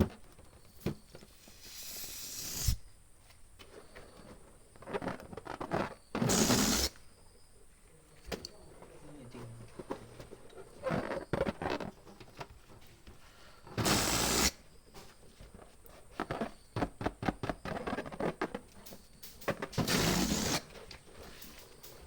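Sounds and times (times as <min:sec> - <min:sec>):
hand pump air rushes: 0:01.4 - 0:02.8, 0:06.2 - 0:07.0, 0:13.8 - 0:14.6, 0:19.2 - 0:20.8
rubber balloon squeaks and taps: 0:03.8 - 0:07.0, 0:09.8 - 0:13.1, 0:13.7 - 0:21.1.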